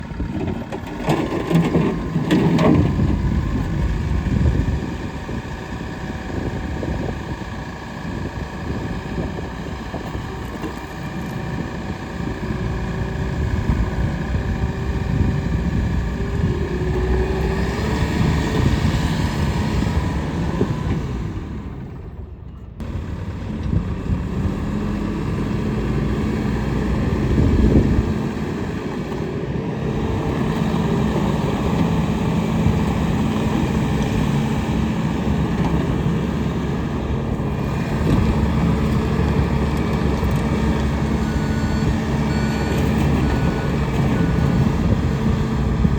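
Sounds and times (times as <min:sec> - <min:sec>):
diesel engine running: 0:00.0 - 0:45.9
reversing beeper: 0:40.9 - 0:44.9.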